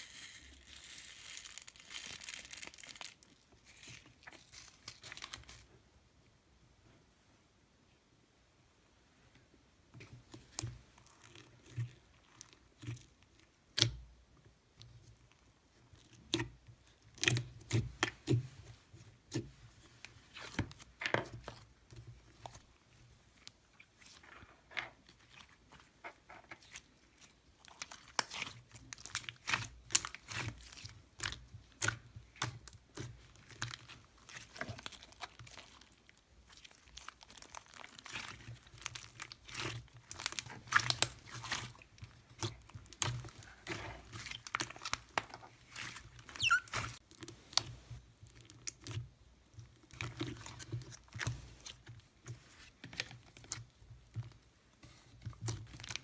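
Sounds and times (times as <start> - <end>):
slime squished by hand: 26.2 - 47.8.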